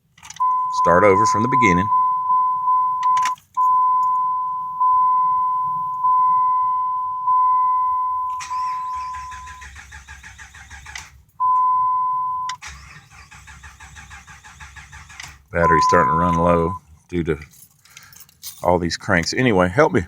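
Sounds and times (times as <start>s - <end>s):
dashboard warning chime dinging: 0.4s - 9.8s, 11.4s - 12.6s, 15.6s - 16.8s
starter cranking engine: 8.4s - 11.2s, 12.6s - 16.8s.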